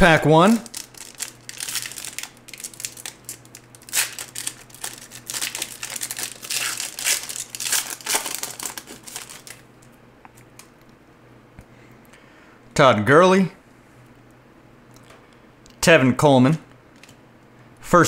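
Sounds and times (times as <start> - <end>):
wrapper crinkling and tearing: 0.5 - 9.7.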